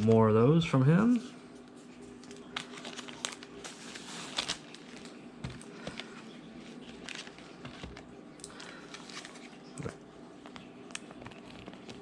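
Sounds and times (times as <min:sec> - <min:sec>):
packaging rustling and clicking: 0:02.2 - 0:09.7.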